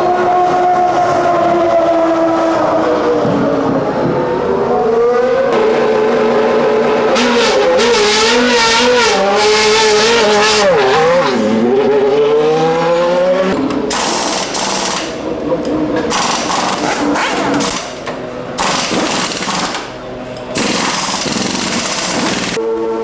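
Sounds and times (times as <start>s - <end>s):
racing car engine at high revs: 0.0s - 23.0s
harsh noisy sound: 16.1s - 18.0s, 18.6s - 22.6s.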